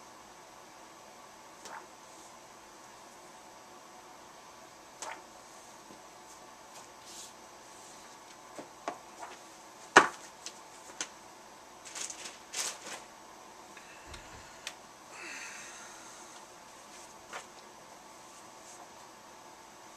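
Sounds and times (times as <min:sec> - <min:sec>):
paper rustling: 0:11.8 - 0:13.1.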